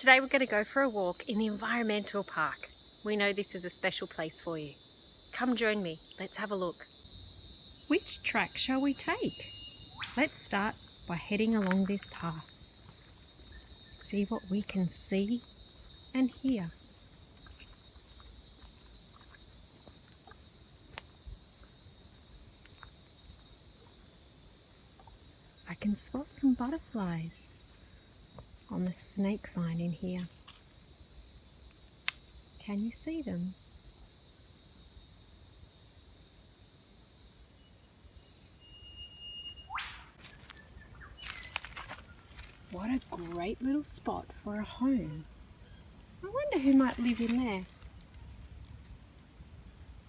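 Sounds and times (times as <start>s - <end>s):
higher insect chirp: 0.0s - 50.0s
insects chorus: 0.0s - 50.0s
bird whistling and whip-crack call: 9.5s - 10.4s, 38.7s - 41.5s.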